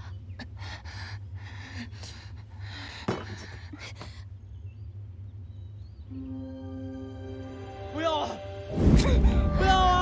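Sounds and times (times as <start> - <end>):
steady low hum: 0.0 - 7.6.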